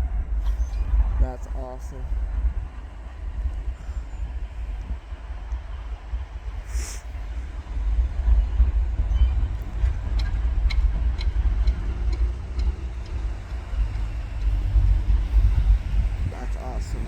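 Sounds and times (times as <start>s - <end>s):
freight train rumbling: 0.0s - 17.0s.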